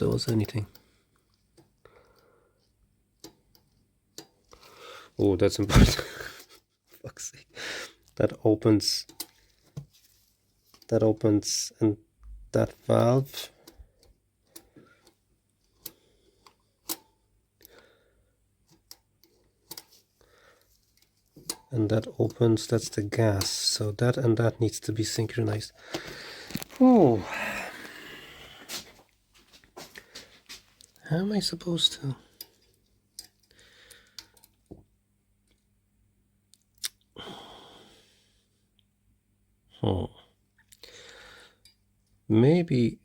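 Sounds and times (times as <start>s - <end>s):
sharp click of parts: 18.7s - 20.0s
person sighing: 25.8s - 28.9s, 37.2s - 38.0s.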